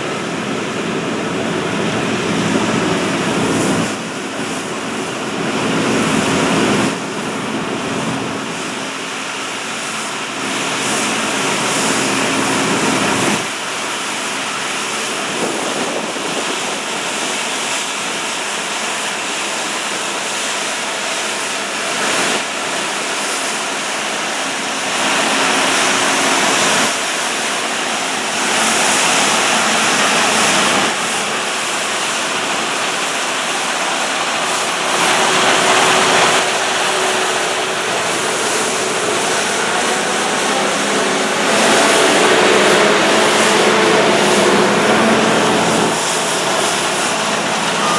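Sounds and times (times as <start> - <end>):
combine harvester machinery noise: 0.0 - 47.9.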